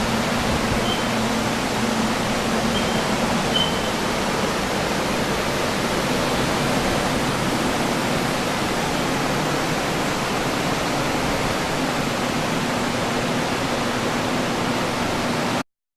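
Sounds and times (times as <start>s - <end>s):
faint low motor hum: 0.0s - 15.1s
blower fans rushing air: 0.0s - 15.6s.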